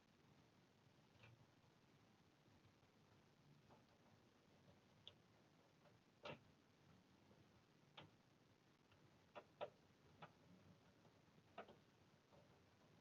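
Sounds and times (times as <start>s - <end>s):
light clicks and taps: 8.9s - 12.7s.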